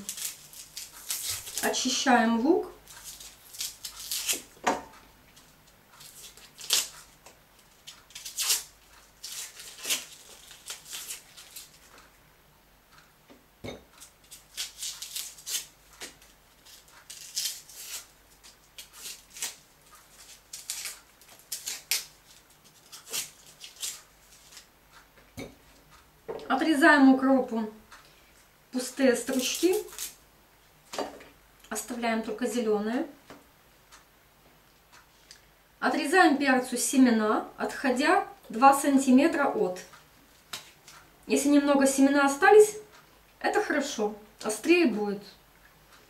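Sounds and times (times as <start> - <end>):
onion skins rustling and crackling: 0.0 - 12.2, 14.0 - 25.0, 28.2 - 30.2.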